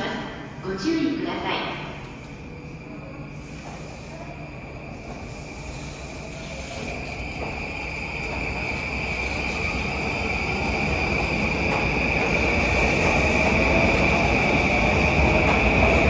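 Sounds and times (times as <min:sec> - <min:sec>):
high-pitched train whine: 0:00.0 - 0:16.0
train rumble: 0:00.0 - 0:16.0.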